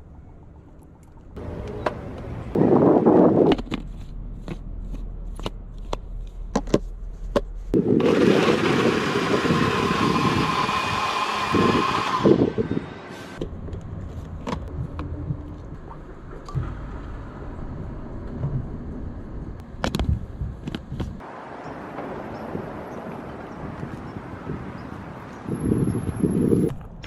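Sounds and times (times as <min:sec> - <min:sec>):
electric blender motor whining: 0:07.8 - 0:13.4.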